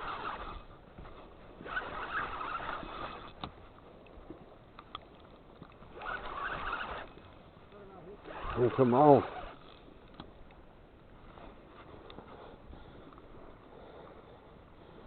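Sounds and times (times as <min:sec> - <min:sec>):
fishing reel winding: 0:00.0 - 0:00.8, 0:01.6 - 0:03.5, 0:05.9 - 0:07.3, 0:08.1 - 0:10.4
faint clicks: 0:00.1 - 0:07.9, 0:09.5 - 0:10.6, 0:11.3 - 0:13.8.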